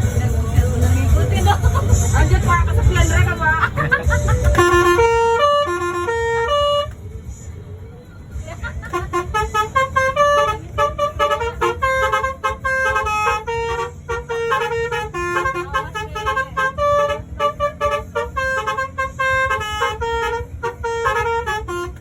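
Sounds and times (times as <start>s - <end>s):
bus rumble: 0.0s - 22.0s
multi-tone air horn tune: 3.8s - 7.0s, 8.6s - 22.0s.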